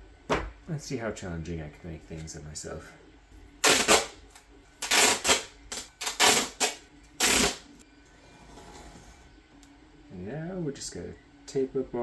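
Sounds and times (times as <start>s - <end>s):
duct tape ripping off roll: 3.6s - 4.2s, 4.8s - 7.7s.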